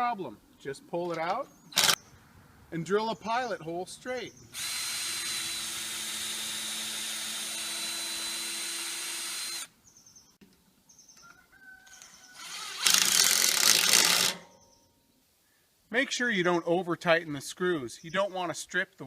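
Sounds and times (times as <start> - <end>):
power drill boring into wood: 1.8 - 2.0, 4.6 - 9.7, 12.4 - 14.4.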